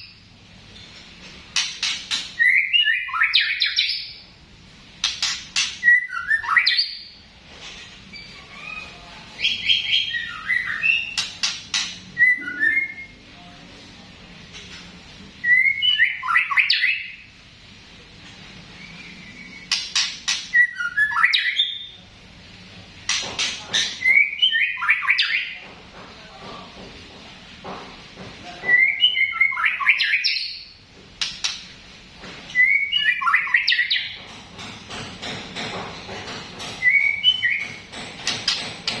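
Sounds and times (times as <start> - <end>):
bird chirping with sharp clicks: 1.6 - 4.0, 5.0 - 6.0, 10.8 - 12.5, 19.6 - 21.2, 31.2 - 31.7.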